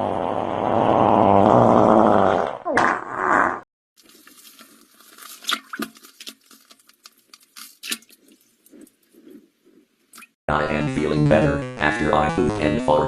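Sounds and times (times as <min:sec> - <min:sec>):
fart sound effect: 0:00.0 - 0:03.6, 0:10.5 - 0:13.0.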